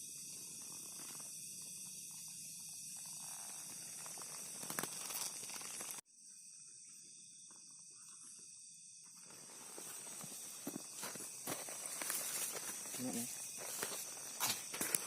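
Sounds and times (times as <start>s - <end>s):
crickets chirping: 0.0s - 15.0s
rustling: 0.4s - 6.0s.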